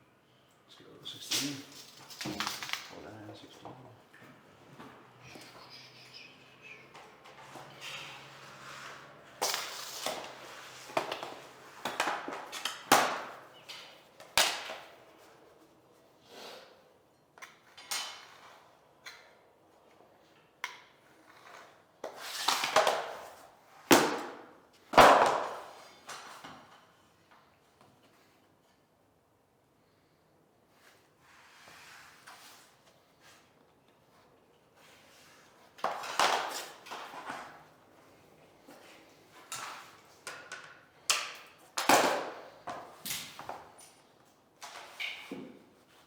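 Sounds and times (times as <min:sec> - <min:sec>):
flooring planks knocking and clacking: 0:23.9 - 0:26.6, 0:39.5 - 0:43.8.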